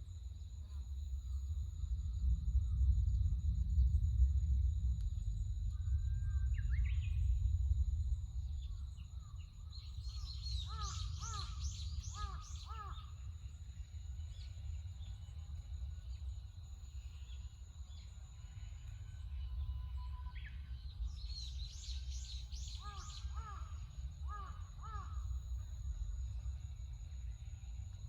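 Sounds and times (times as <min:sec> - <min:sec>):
low wind rumble: 0:00.0 - 0:28.0.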